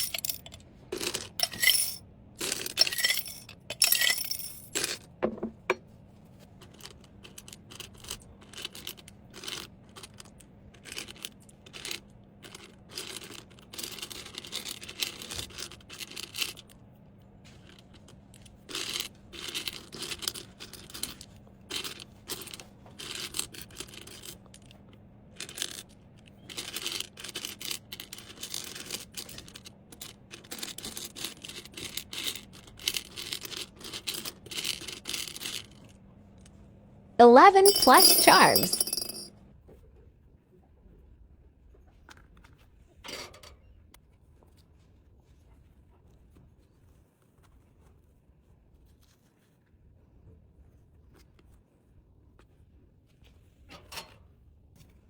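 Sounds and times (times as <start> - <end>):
small hard items clinking: 0.0 - 5.8, 37.4 - 39.3.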